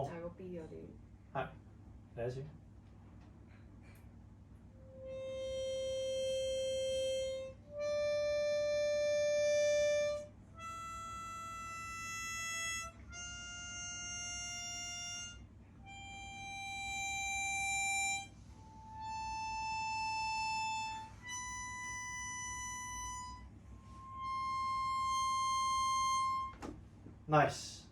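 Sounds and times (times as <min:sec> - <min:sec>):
harmonica playing long notes: 0:04.8 - 0:26.7.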